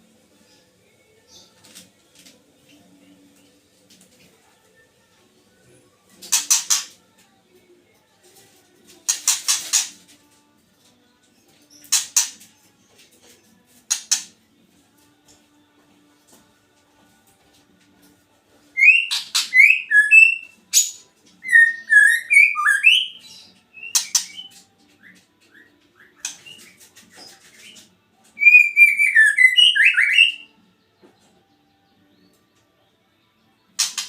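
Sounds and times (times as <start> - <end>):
bird singing whistled phrases: 18.8 - 20.6, 21.5 - 23.2, 28.4 - 30.5.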